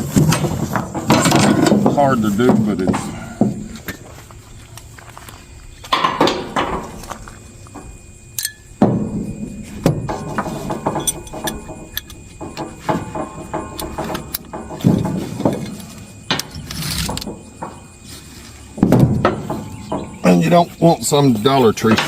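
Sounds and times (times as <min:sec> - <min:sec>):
loud knocks: 0:00.0 - 0:04.1, 0:05.9 - 0:08.1, 0:08.7 - 0:20.5
metal strap hardware clinking: 0:08.4 - 0:08.6, 0:11.0 - 0:12.3.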